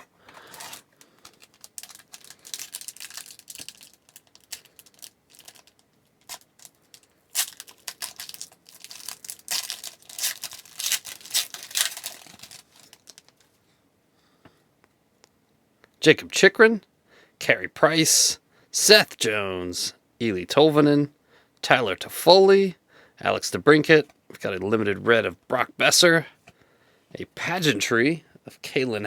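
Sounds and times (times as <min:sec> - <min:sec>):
foil wrapper tearing and crinkling: 0:00.0 - 0:13.4.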